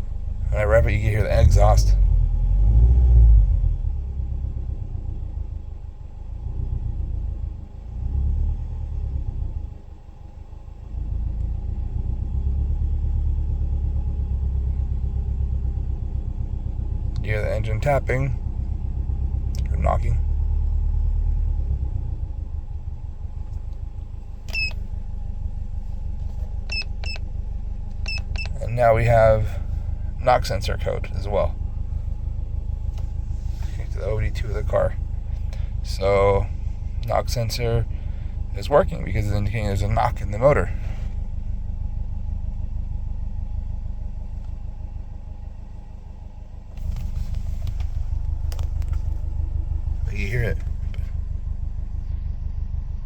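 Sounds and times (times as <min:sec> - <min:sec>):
engine idling with knocking: 0:21.8 - 0:53.0.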